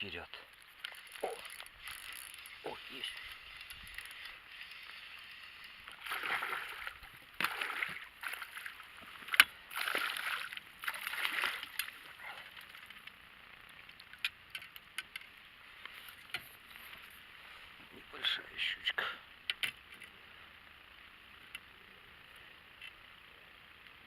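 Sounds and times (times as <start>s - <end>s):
water splashing and sloshing: 0.6s - 13.1s.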